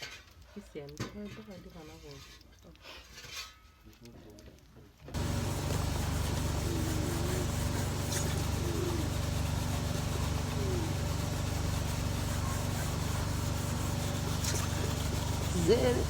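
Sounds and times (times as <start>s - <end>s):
vehicle engine running: 5.2s - 16.0s.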